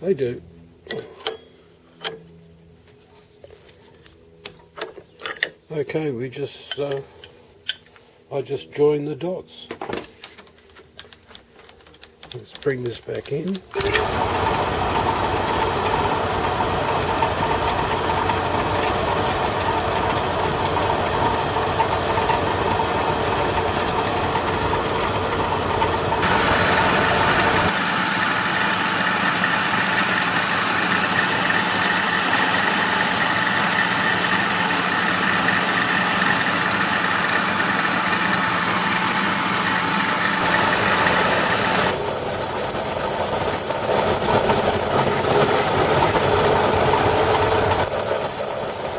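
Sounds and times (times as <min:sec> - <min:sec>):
milling machine cutting metal: 0:13.8 - 0:48.9.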